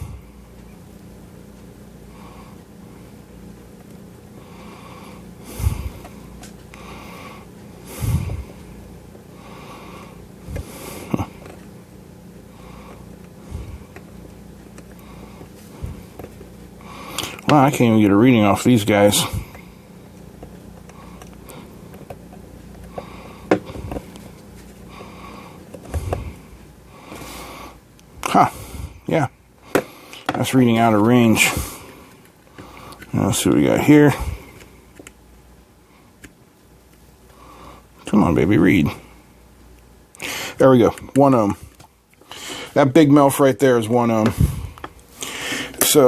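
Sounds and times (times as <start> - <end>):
man breathing through nose: 0.0 - 0.4, 4.4 - 8.6, 9.3 - 11.5, 12.5 - 14.1, 14.9 - 17.5, 22.8 - 27.8, 28.5 - 30.3, 31.4 - 33.1, 40.2 - 40.6, 41.6 - 42.8, 44.3 - 45.8
steady low hum: 0.0 - 46.0.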